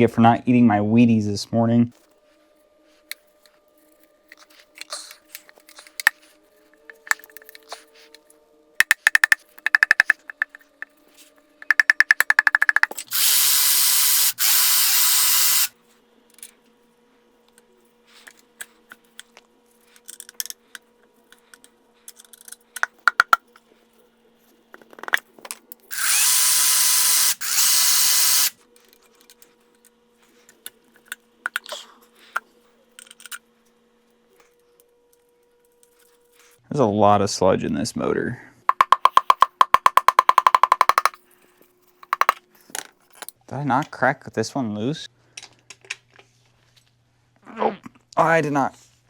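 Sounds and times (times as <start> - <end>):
rapid clicking: 11.7 - 13.0, 38.7 - 41.2
power tool running: 12.3 - 15.7, 25.9 - 28.6.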